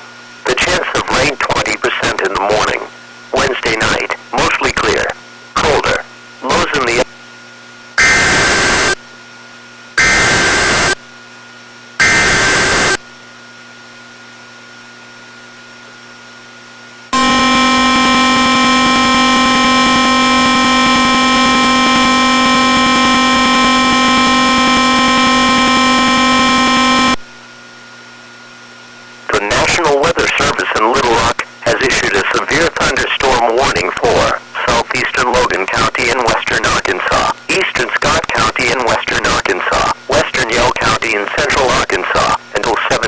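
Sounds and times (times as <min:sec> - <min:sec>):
screeching data bursts: 0:08.0 - 0:09.0, 0:10.0 - 0:11.0, 0:12.0 - 0:13.0, 0:17.2 - 0:27.2
steady attention signal tone: 0:08.0 - 0:09.0, 0:10.0 - 0:11.0, 0:12.0 - 0:13.0, 0:17.2 - 0:27.2.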